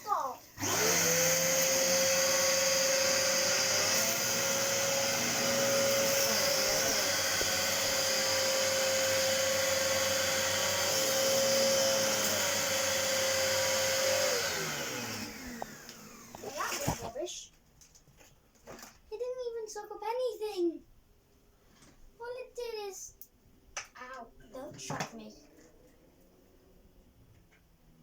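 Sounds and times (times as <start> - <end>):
vacuum cleaner motor whine: 0.5 - 17.1
brush roll grinding cereal: 0.6 - 17.2.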